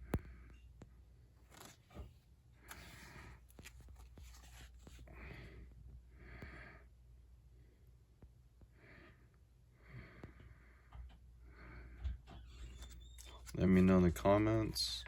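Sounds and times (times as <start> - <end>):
paper bills swishing: 2.7 - 5.0, 12.8 - 15.0.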